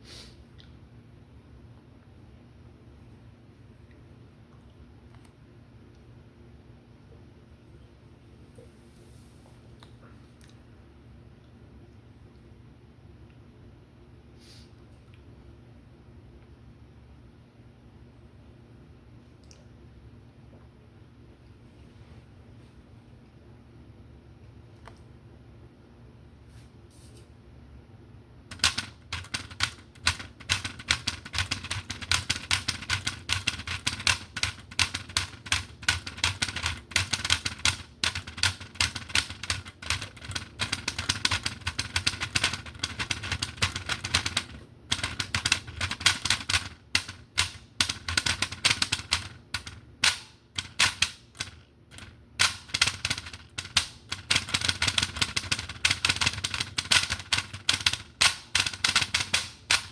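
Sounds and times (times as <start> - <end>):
fast sharp clicking taps: 28.5 - 59.9.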